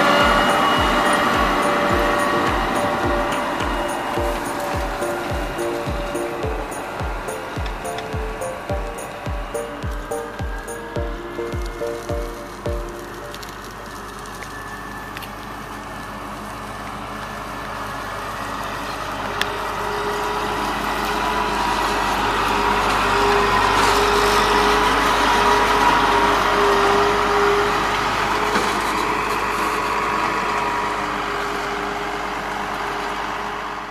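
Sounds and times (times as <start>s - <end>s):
diesel engine of farm machine: 0.0s - 9.2s, 12.4s - 33.9s
steady mechanical whine: 0.0s - 16.8s.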